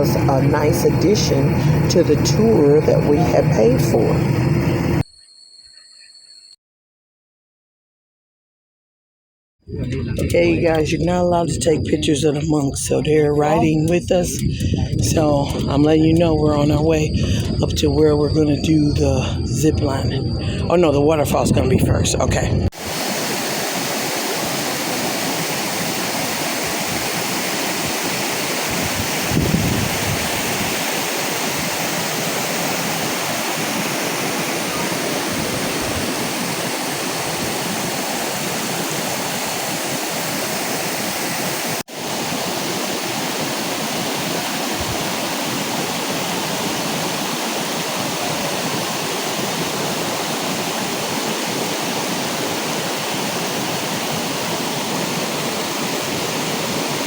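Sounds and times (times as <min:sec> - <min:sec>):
waterfall rushing: 0:22.8 - 0:57.0.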